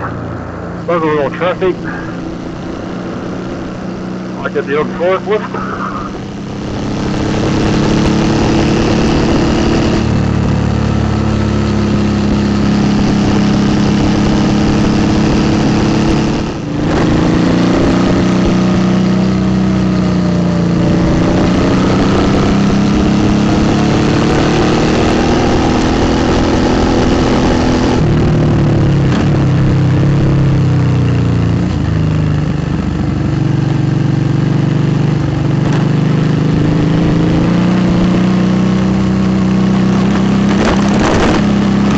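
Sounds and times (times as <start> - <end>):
motorcycle engine running: 0.0 - 41.9.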